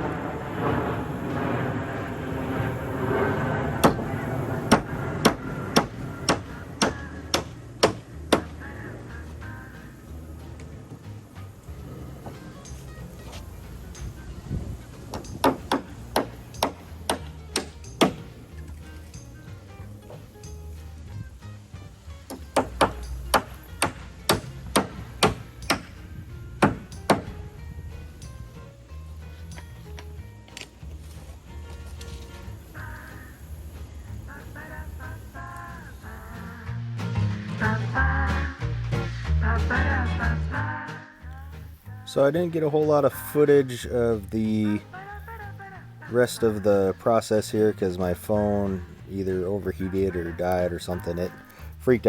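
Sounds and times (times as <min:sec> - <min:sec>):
background music: 0:00.0 - 0:52.0
hammer driving nails into wood: 0:05.8 - 0:08.5, 0:15.1 - 0:18.3, 0:22.3 - 0:26.0, 0:26.6 - 0:27.3.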